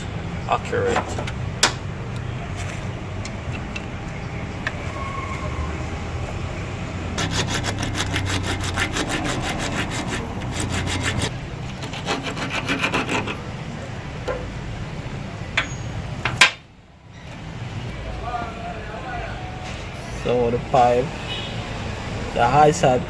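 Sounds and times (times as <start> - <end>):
hand saw cutting metal pipe: 7.2 - 13.4.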